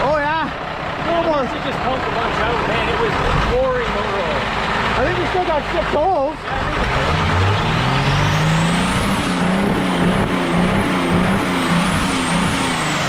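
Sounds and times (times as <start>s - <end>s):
engine revving: 2.0s - 13.0s
high whine: 7.1s - 13.0s.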